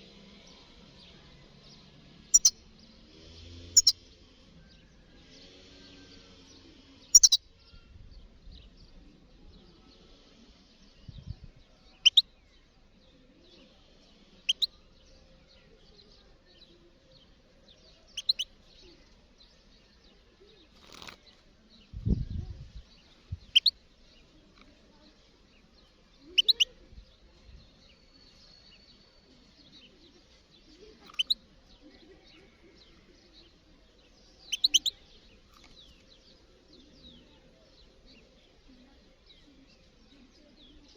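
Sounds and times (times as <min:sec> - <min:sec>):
goldfinch calls: 0:02.3 - 0:02.6, 0:03.8 - 0:04.0, 0:07.1 - 0:07.4, 0:12.0 - 0:12.2, 0:14.5 - 0:14.7, 0:18.2 - 0:18.5, 0:23.5 - 0:23.7, 0:26.4 - 0:26.7, 0:31.1 - 0:31.4, 0:34.5 - 0:35.0.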